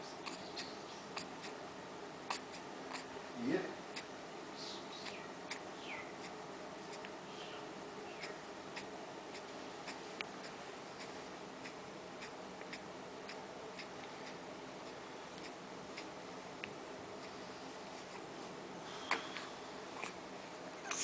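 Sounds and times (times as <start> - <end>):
ceiling fan humming: 0.0 - 21.0
faint fan clicks: 4.0 - 7.2, 8.2 - 17.4.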